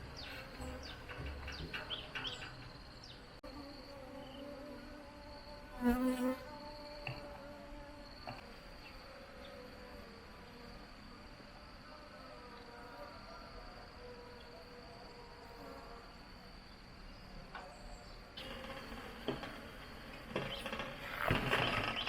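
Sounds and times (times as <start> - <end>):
bees buzzing: 3.4 - 10.5
bee flying close past: 3.5 - 10.8.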